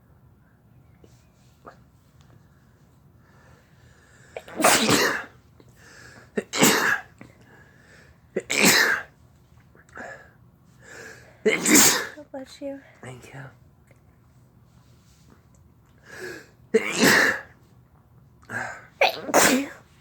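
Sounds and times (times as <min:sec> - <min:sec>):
person sneezing: 0:04.4 - 0:05.4, 0:06.4 - 0:07.1, 0:08.4 - 0:09.1, 0:11.5 - 0:12.2, 0:16.2 - 0:17.5, 0:18.6 - 0:19.9.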